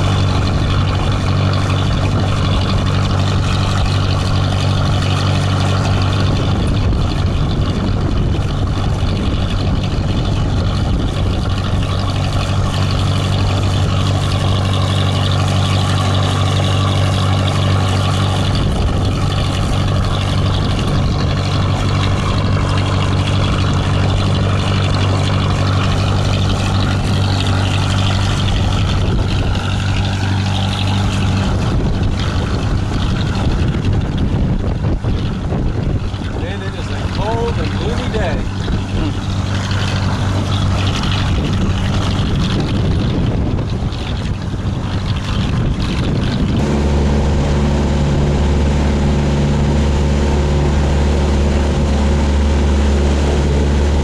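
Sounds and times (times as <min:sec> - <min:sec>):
boat diesel engine droning: 0:00.0 - 0:54.0.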